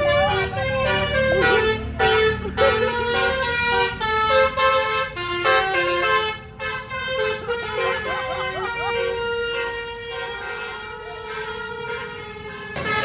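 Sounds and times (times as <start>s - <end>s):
bus engine rumble: 0.0s - 13.0s
multi-tone air horn tune: 0.0s - 13.0s.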